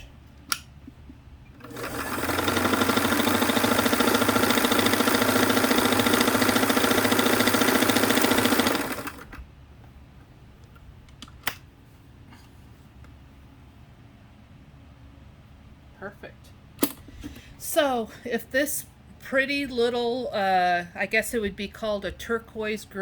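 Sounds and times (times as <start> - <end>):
sewing machine running: 1.6 - 9.4.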